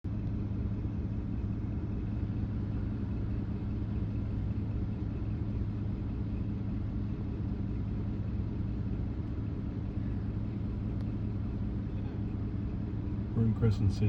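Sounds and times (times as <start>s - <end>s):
vehicle engine idling: 0.0s - 14.0s.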